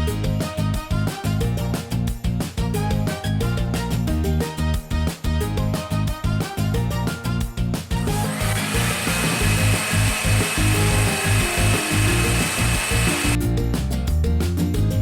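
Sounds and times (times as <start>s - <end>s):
background music with steady beat: 0.0s - 15.0s
small electric motor whirring: 8.1s - 13.4s
loud hiss with high whine: 8.3s - 13.4s.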